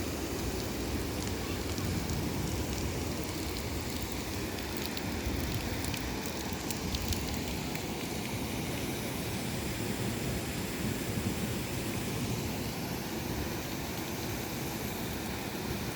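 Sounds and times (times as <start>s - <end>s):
heavy rain rushing: 0.0s - 8.0s.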